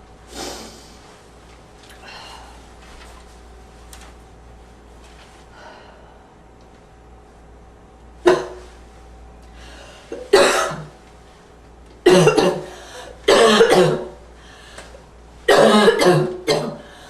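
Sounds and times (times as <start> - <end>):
person coughing: 8.2 - 8.7, 10.1 - 10.9, 12.0 - 14.2, 15.5 - 16.9.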